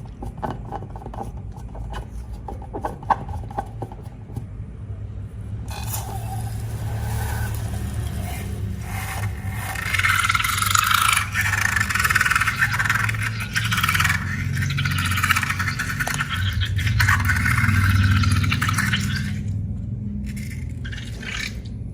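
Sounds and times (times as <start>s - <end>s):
steady low hum: 0.0s - 21.9s
slime scraping in container: 5.7s - 19.4s.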